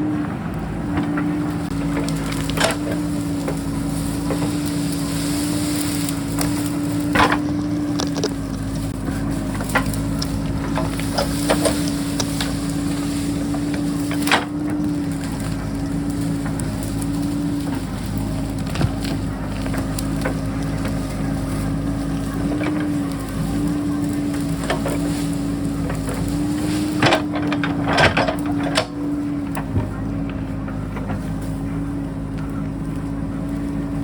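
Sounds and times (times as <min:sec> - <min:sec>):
diesel engine running: 0:00.0 - 0:34.0
rock cracking and scraping: 0:01.7 - 0:27.4.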